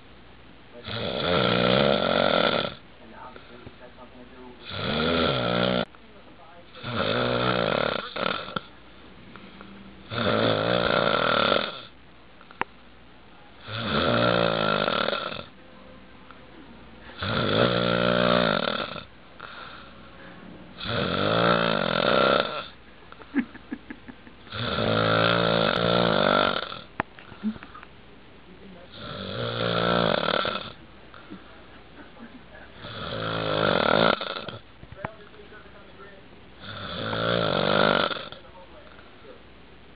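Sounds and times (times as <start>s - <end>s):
man snoring heavily: 0.8s - 2.8s, 4.6s - 5.9s, 6.8s - 8.7s, 10.0s - 11.9s, 13.6s - 15.5s, 17.1s - 19.9s, 20.8s - 22.8s, 24.5s - 26.9s, 28.9s - 30.8s, 32.8s - 34.6s, 36.6s - 38.4s
quiet breathing: 3.1s - 3.9s, 8.0s - 10.0s, 18.1s - 20.9s.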